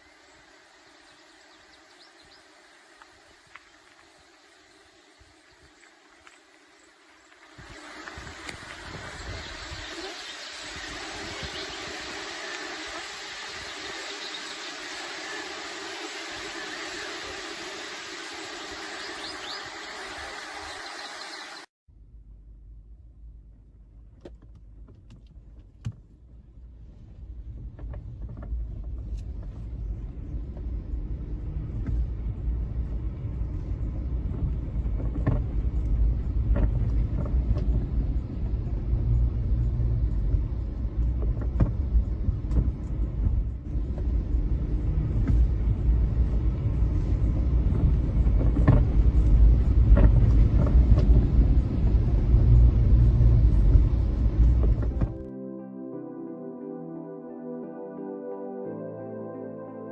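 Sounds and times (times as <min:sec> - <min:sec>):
car engine and road rumble: 0:00.0 - 0:55.3.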